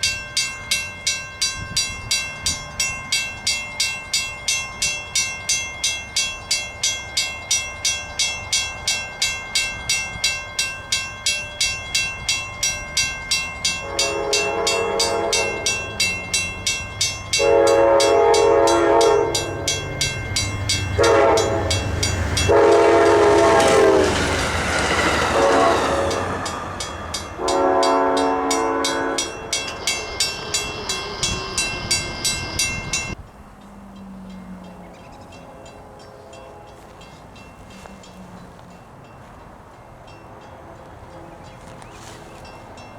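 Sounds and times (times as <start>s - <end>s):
crossing bell ringing: 0.0s - 42.9s
train rushing past: 0.0s - 42.9s
train horn blasts: 13.6s - 16.3s, 17.3s - 26.4s, 27.3s - 33.2s, 35.6s - 38.5s.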